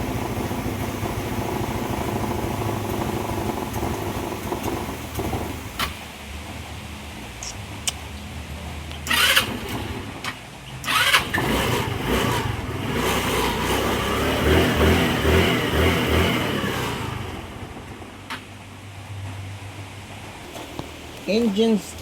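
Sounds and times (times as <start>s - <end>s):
motorcycle engine starting and misfiring: 0.0s - 6.2s, 9.0s - 18.6s.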